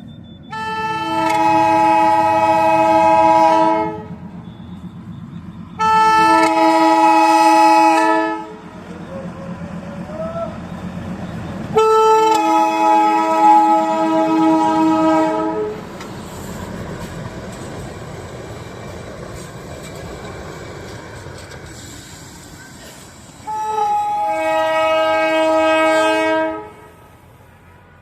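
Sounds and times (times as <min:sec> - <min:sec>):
train rumbling clatter: 0:00.0 - 0:26.2
train horn chord: 0:00.5 - 0:04.2, 0:05.8 - 0:08.6, 0:11.7 - 0:15.9, 0:23.4 - 0:27.2.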